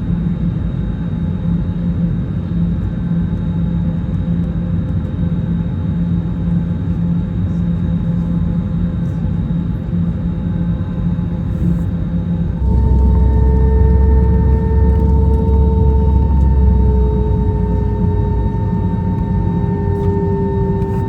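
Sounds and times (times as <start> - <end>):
jet engines droning in cabin: 0.0 - 21.0
faint high whine: 10.1 - 21.0.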